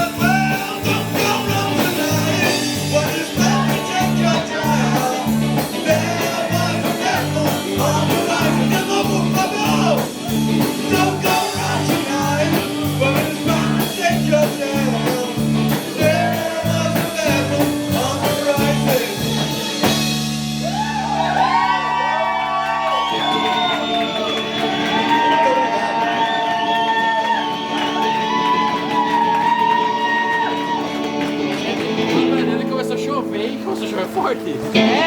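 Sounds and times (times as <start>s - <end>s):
upbeat song with singing: 0.0s - 20.9s, 34.7s - 35.0s.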